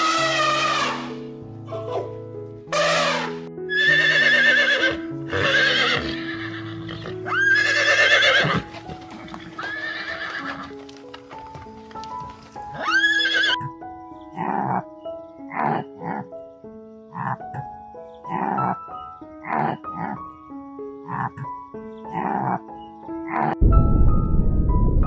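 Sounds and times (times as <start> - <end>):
horse whinnying: 0.0 - 1.1, 2.7 - 10.7, 12.8 - 13.7
background music with held notes: 0.0 - 25.0.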